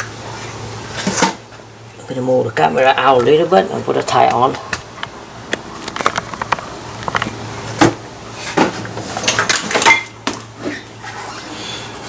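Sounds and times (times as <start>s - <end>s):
faint steady hum: 0.0s - 12.0s
knocks and clatter of hard objects: 5.8s - 10.8s.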